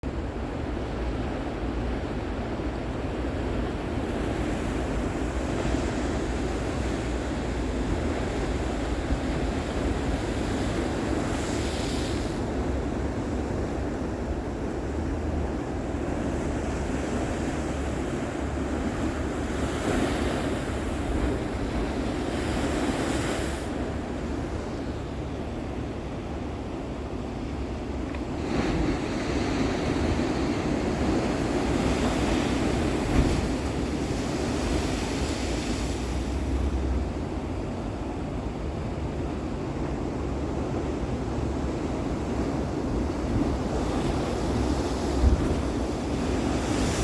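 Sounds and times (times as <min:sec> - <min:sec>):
sea waves breaking: 0:00.1 - 0:47.0
wind rumbling on microphone: 0:41.0 - 0:47.0.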